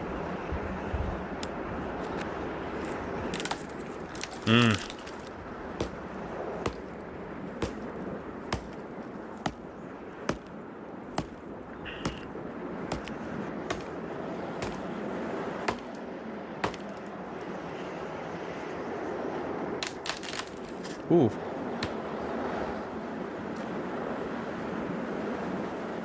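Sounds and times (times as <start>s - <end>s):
axe chopping wood: 1.3s - 15.0s, 15.7s - 17.2s, 19.8s - 21.0s, 21.8s - 22.0s.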